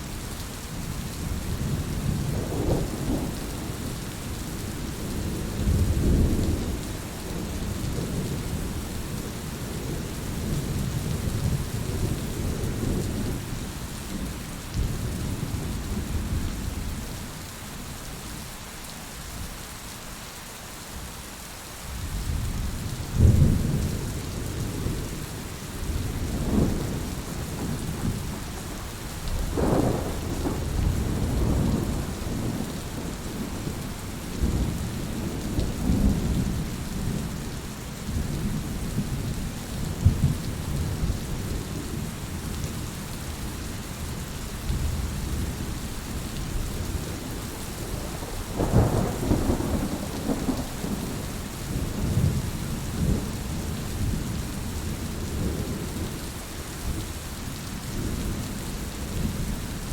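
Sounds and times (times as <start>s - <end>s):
heavy rain falling: 0.0s - 59.9s
rolling thunder: 25.8s - 37.4s, 38.1s - 41.6s, 46.5s - 56.0s.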